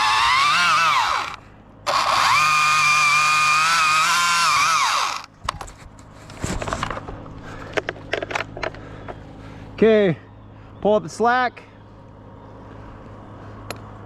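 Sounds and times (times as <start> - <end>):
chainsaw whining while cutting: 0.0 - 5.3.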